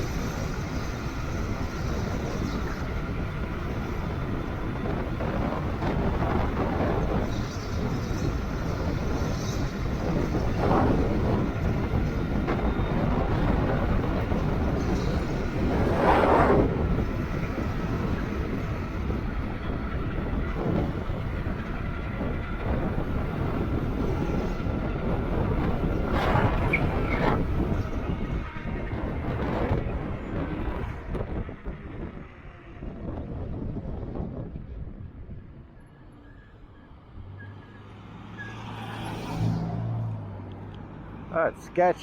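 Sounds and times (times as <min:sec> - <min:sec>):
wind buffeting microphone: 0:00.0 - 0:37.4.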